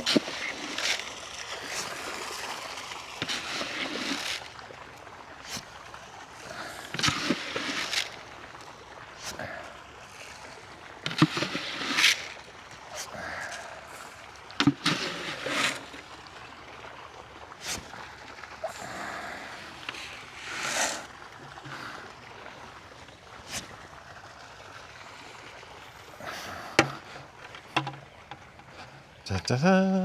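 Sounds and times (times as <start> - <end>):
dry grain pouring: 0.0 - 4.8, 6.5 - 8.4, 10.2 - 14.0, 14.6 - 16.2, 18.7 - 21.1.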